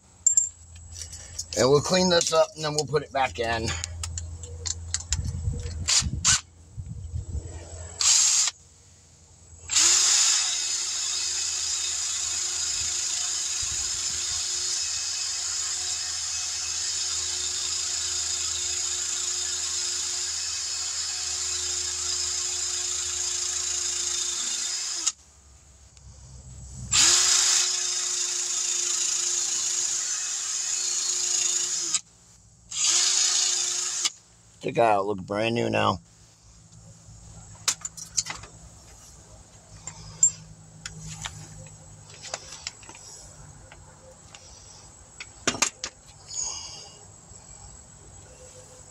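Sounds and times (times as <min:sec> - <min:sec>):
power tool grinding rust: 0:09.7 - 0:25.2, 0:26.9 - 0:32.0, 0:32.7 - 0:34.2.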